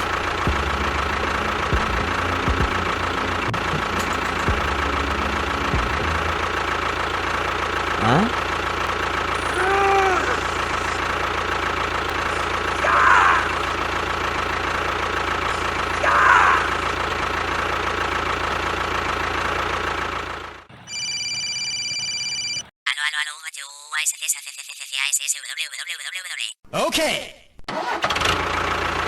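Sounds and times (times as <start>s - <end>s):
steady electronic tones: 0.0s - 7.3s
small motor rattling hum: 0.0s - 20.6s.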